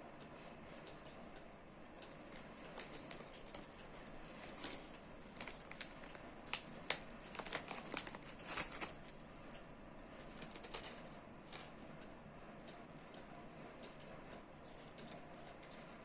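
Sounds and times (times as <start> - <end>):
crinkling and rustling clicks: 2.0 - 12.1.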